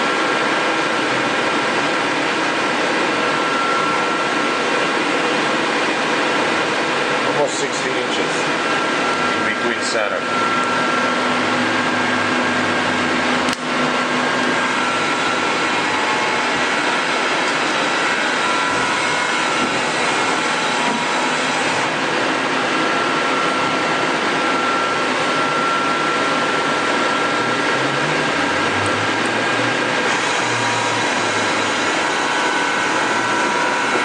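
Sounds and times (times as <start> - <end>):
lathe whirring: 0.0 - 34.0
faint high whine: 3.0 - 29.8
sharp click: 13.5 - 13.7.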